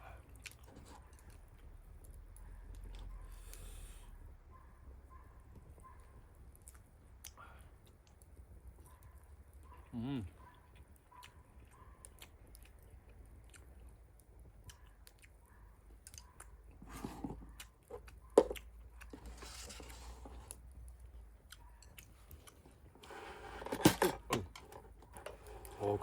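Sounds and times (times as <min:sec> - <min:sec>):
person chewing: 0:00.1 - 0:02.2, 0:06.6 - 0:08.3, 0:10.2 - 0:23.2.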